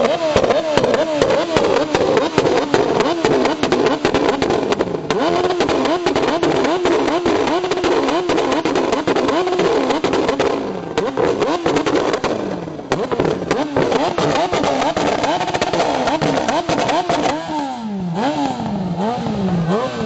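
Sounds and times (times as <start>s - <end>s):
exhaust crackling pops: 0.0s - 17.5s
car engine revving: 0.0s - 20.0s.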